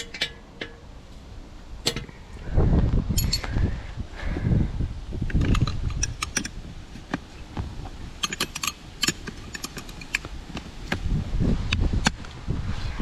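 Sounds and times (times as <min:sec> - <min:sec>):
wind rumble on microphone: 0:01.5 - 0:13.0.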